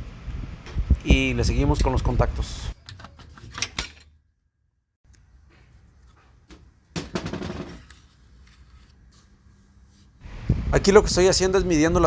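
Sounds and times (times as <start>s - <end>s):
metal clatter: 7.0s - 8.0s.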